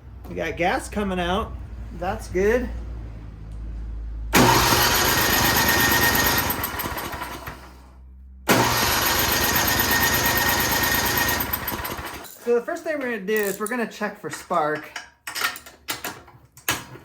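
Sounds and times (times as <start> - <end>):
snowblower engine cranking: 4.4 - 7.8, 8.5 - 12.3.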